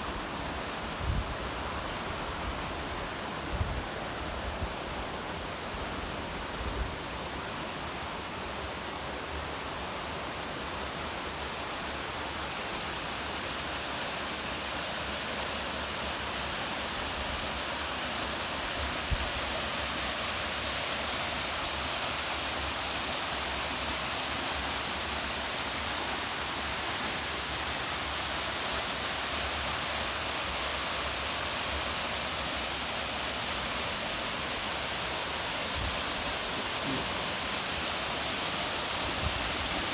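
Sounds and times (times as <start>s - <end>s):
waterfall roaring: 17.9s - 39.9s.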